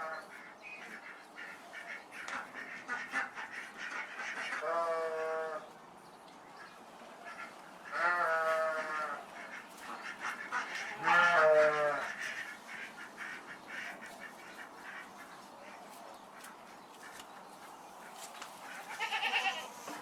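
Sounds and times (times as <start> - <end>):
farm animal calling: 7.2 - 20.0.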